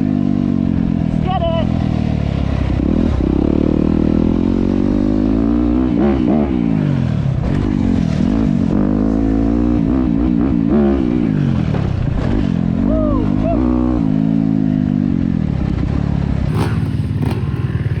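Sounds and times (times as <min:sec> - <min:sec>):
dirt bike engine revving: 0:16.5 - 0:18.0.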